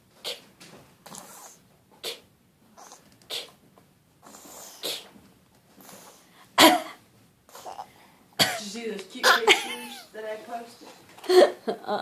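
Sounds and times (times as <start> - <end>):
baby coughing: 6.6 - 7.8, 8.4 - 10.0.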